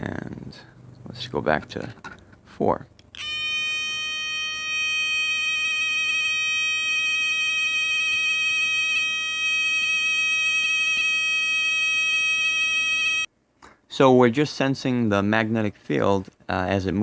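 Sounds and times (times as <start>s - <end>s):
buzzy alarm tone from speaker: 3.2s - 13.3s.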